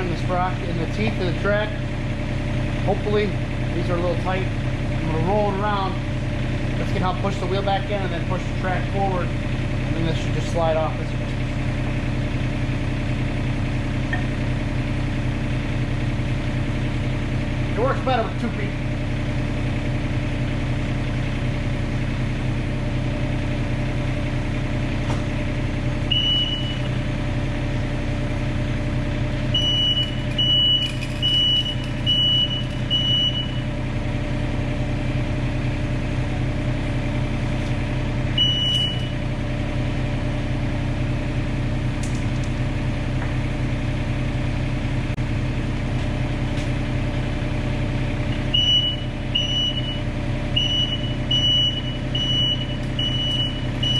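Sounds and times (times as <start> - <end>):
excavator diesel engine running: 0.0 - 53.9
travel alarm high beeps: 26.1 - 26.9, 29.6 - 33.6, 38.4 - 39.2, 48.5 - 53.9.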